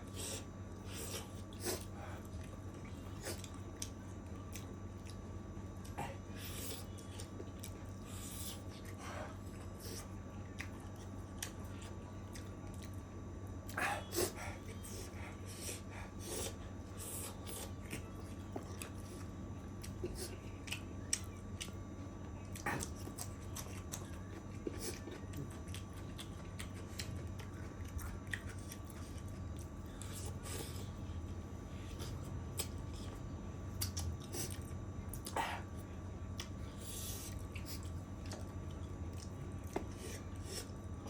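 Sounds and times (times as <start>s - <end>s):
person chewing food: 0.0s - 41.0s
steady low hum: 0.0s - 41.0s.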